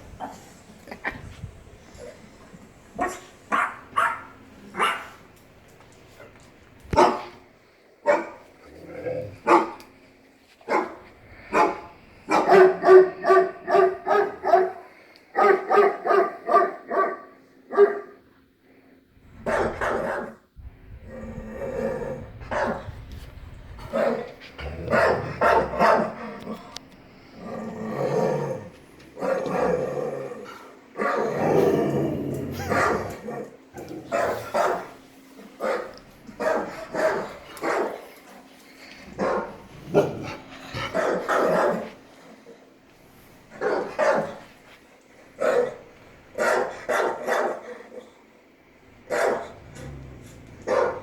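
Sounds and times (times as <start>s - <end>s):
dog barking: 3.0s - 5.2s, 7.0s - 7.3s, 8.0s - 8.4s, 9.4s - 9.8s, 10.7s - 18.2s, 19.4s - 20.4s, 22.5s - 22.8s, 24.9s - 26.2s, 32.6s - 33.2s, 34.1s - 35.0s, 35.6s - 38.0s, 39.2s - 40.2s, 40.8s - 41.9s, 43.6s - 44.4s, 45.4s - 45.8s, 46.4s - 47.8s, 49.1s - 49.6s, 50.6s - 51.0s.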